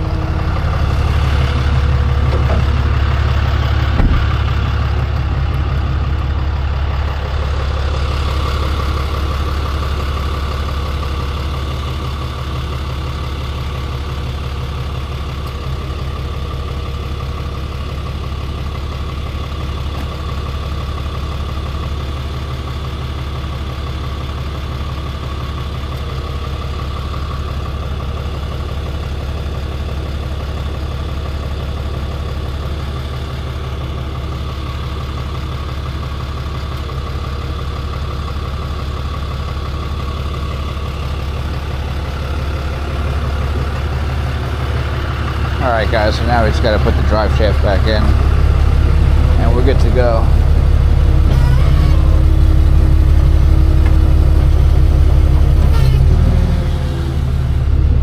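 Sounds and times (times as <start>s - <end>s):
truck engine idling: 0.0s - 58.0s
sharp knock: 3.9s - 4.4s.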